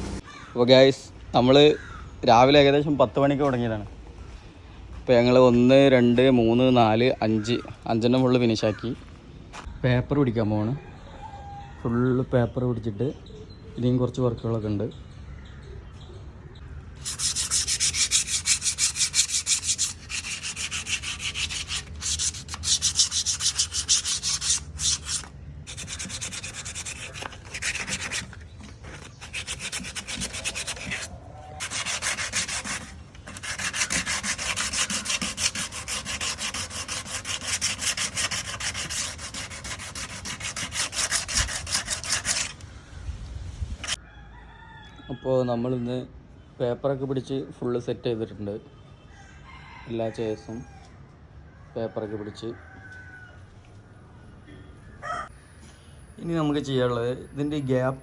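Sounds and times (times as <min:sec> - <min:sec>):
sandpaper rubbing on wood: 0:17.0 - 0:42.6.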